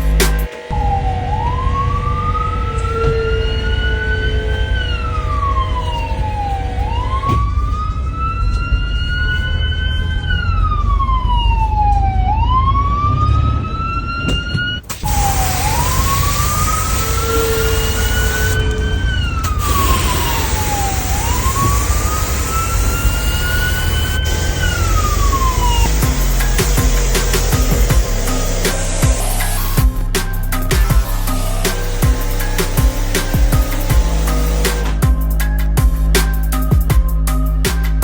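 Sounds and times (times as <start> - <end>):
wailing siren: 0.7 - 35.3
heavy low rumble: 15.0 - 35.4.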